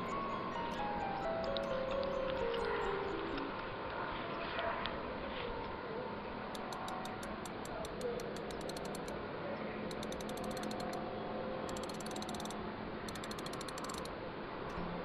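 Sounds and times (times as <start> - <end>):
insect clicking: 6.6 - 9.2, 9.9 - 11.0, 11.7 - 14.1.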